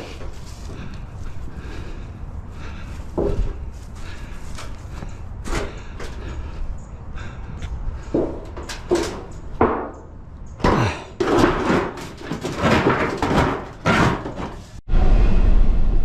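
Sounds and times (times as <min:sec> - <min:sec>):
scrap metal banging and clattering: 0:08.0 - 0:14.8
steady low rumble: 0:14.9 - 0:16.0.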